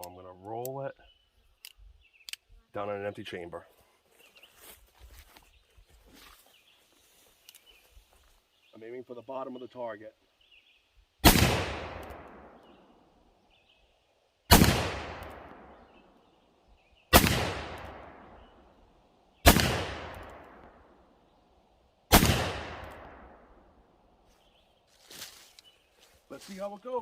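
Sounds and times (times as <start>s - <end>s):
revolver shots with echo: 17.2s - 18.5s, 19.5s - 20.6s, 22.1s - 23.3s.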